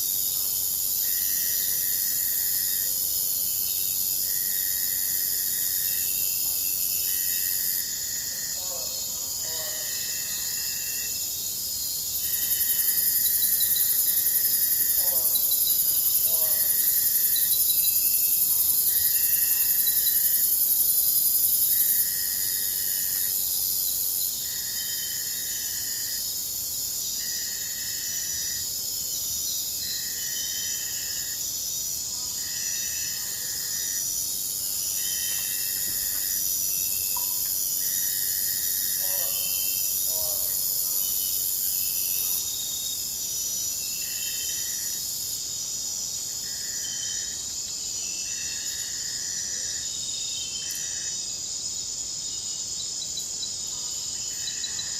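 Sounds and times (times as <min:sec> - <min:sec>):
loud high insect buzz: 0:09.8 - 0:50.0.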